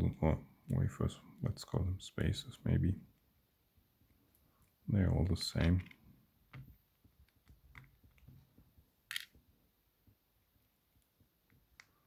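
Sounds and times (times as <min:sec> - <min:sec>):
small metal parts clicking on table: 0:09.1 - 0:09.4.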